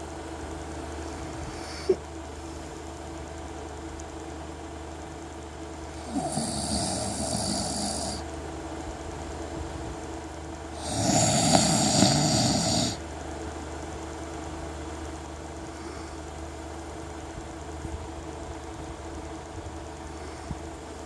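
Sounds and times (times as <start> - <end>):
low background hum: 0.0 - 21.0
man snoring: 5.9 - 8.2, 10.8 - 13.0.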